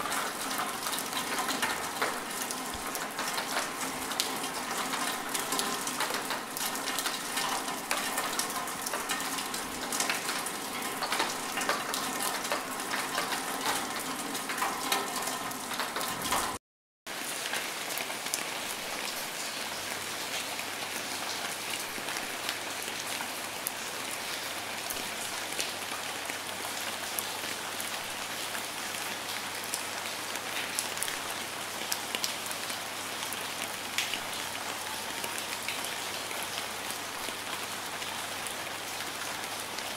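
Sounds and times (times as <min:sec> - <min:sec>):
raindrops ticking: 0:00.0 - 0:16.6
rain falling: 0:00.0 - 0:39.9.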